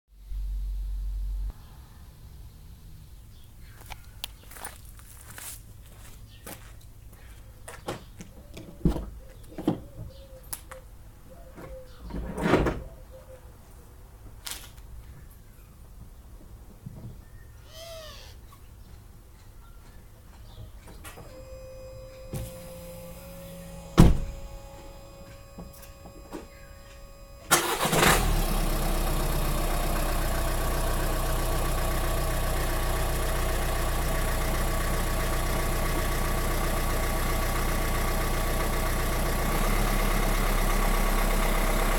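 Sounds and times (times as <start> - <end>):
car engine starting and idling: 20.9 - 41.9
car door shutting: 21.0 - 28.1.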